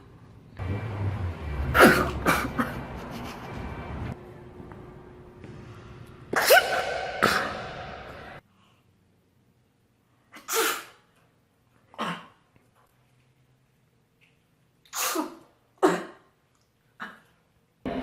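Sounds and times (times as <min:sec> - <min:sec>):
woman sneezing: 0:06.4 - 0:07.9, 0:10.4 - 0:11.0, 0:14.9 - 0:16.3.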